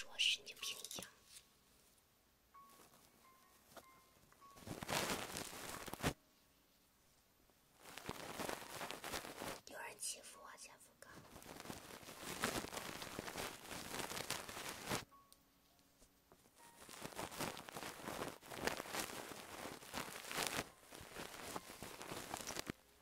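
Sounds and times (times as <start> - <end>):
feather scratching microphone: 7.8 - 9.6.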